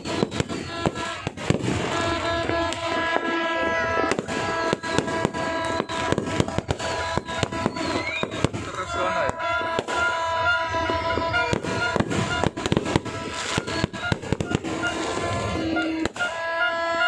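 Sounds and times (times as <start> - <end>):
fireworks banging: 0.0 - 17.0.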